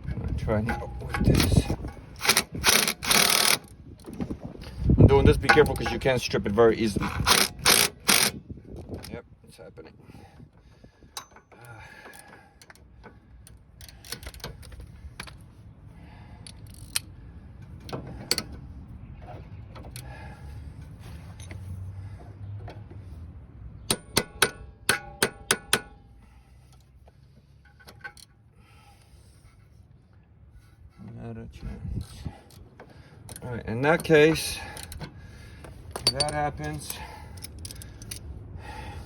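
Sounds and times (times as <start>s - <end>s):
metal tools clinking and scraping: 0.3s - 3.7s, 5.2s - 8.4s, 27.4s - 28.4s, 33.3s - 38.3s.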